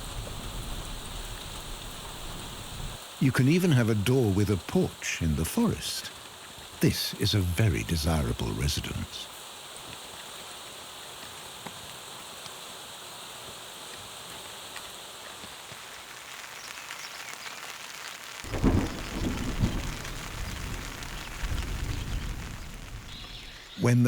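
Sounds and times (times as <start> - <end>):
thunder rumbling: 0.0 - 3.0, 18.5 - 23.7
rain falling: 0.0 - 23.9.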